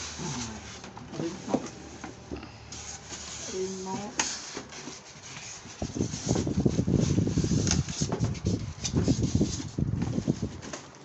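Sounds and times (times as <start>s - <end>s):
packaging rustling and knocking: 4.0s - 11.0s.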